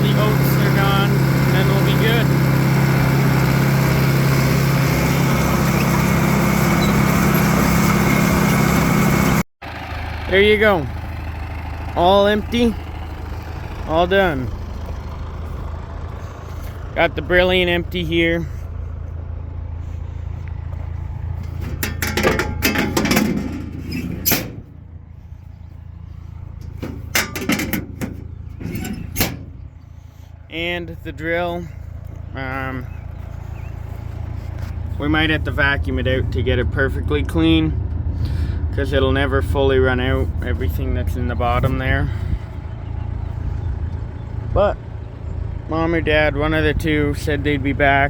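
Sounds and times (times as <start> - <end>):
tractor engine running: 0.0 - 48.0
sharp knocks and clanks: 21.4 - 24.8, 26.6 - 29.7.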